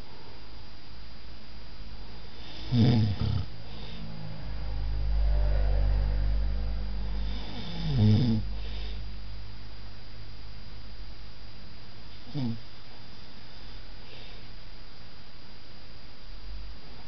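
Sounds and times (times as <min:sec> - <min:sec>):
person snoring: 0:02.4 - 0:04.4, 0:05.2 - 0:09.0, 0:12.3 - 0:12.6
low breath: 0:03.4 - 0:09.3.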